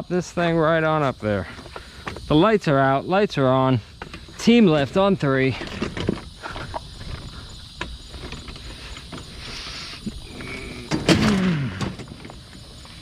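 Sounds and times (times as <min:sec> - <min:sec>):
knocks and handling noise: 0:05.6 - 0:09.4.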